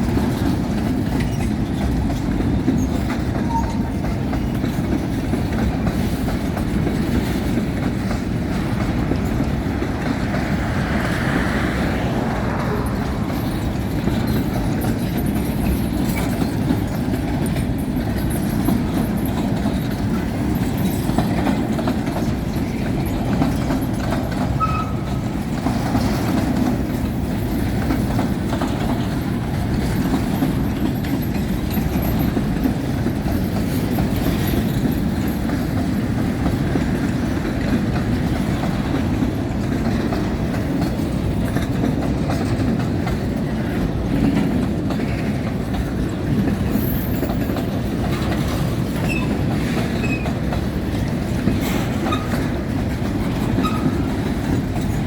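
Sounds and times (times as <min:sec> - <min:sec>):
train wheels on rails: 0:00.0 - 0:55.0.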